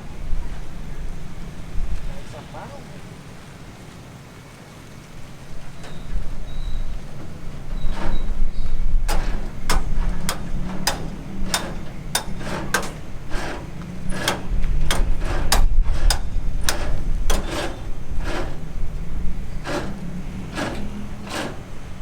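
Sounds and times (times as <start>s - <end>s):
hammer strikes: 9.1s - 17.8s.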